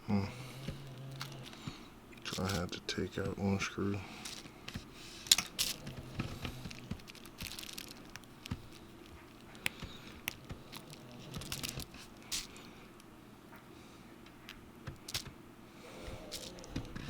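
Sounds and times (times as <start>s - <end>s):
scratchy rustle: 0.6s - 2.8s, 4.1s - 12.7s, 15.9s - 17.0s
small tools clicking and tapping: 0.6s - 3.4s, 4.2s - 13.1s, 14.4s - 15.4s, 16.0s - 17.0s.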